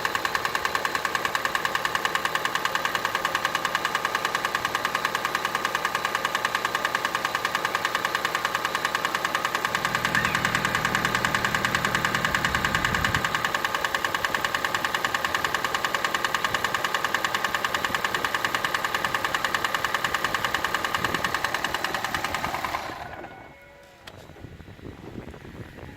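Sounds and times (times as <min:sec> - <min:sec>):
car engine running: 0:00.0 - 0:23.0
fast engine knocking: 0:00.0 - 0:23.3.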